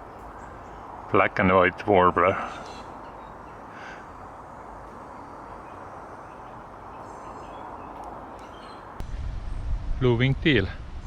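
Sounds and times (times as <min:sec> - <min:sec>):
outdoor background noise: 0:00.0 - 0:11.0
faint high bird chirps: 0:01.9 - 0:09.0.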